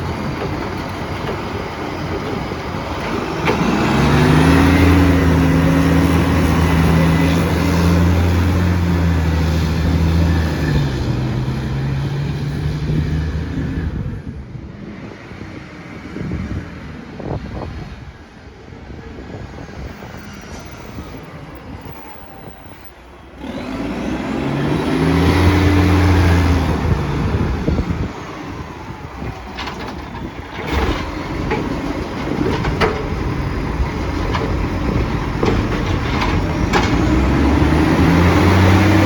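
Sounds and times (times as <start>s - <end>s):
truck engine with exhaust leak: 21.7s - 39.0s.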